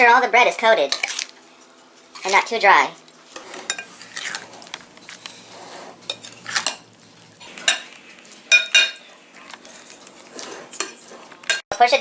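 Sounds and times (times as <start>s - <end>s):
utensil scraping bread in bowl: 3.1s - 7.7s, 9.0s - 11.4s
utensil clinking against bowl: 7.6s - 9.0s.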